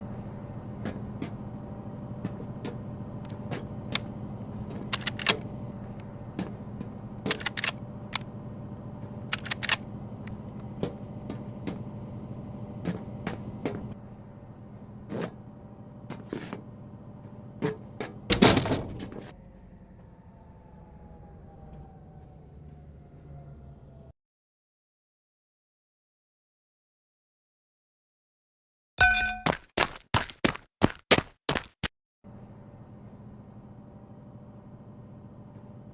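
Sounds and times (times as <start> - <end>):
irregular clicks and knocks: 4.8 - 5.4, 7.3 - 8.3, 9.3 - 9.8.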